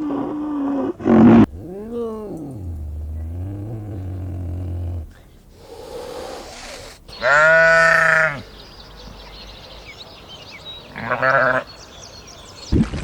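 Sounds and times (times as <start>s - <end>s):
big cat growling: 0.0s - 8.4s
farm animal bleating: 7.1s - 8.4s, 10.9s - 11.7s.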